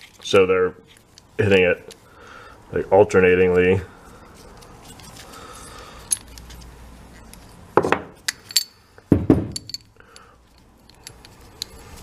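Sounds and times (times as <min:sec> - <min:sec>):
steel parts clinking together: 0:08.2 - 0:08.8, 0:09.5 - 0:11.8.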